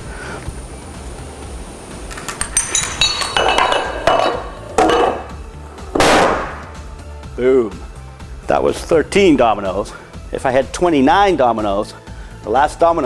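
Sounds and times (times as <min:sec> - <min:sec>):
large domino crashing: 0:05.9 - 0:06.7.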